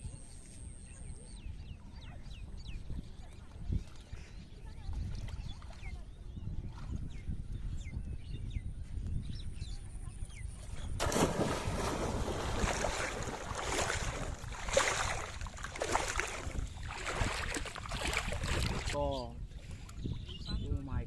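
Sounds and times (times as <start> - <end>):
faint bird chirps: 0.0 - 11.0
water splashing and sloshing: 10.9 - 20.3.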